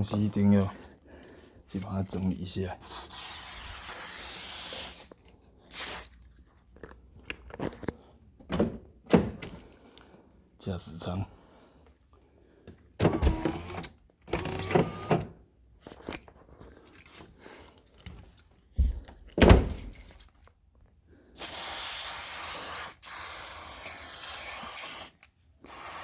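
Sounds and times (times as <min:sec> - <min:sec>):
aerosol can spraying: 0:02.8 - 0:05.0, 0:21.4 - 0:26.0.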